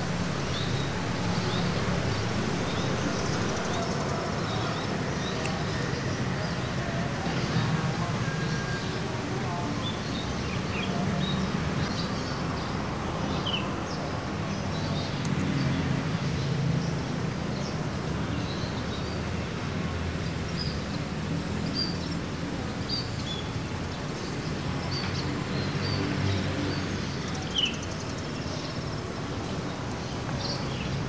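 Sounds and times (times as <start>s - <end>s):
steady low rumble: 0.0s - 3.9s
small birds chirping: 0.0s - 4.8s.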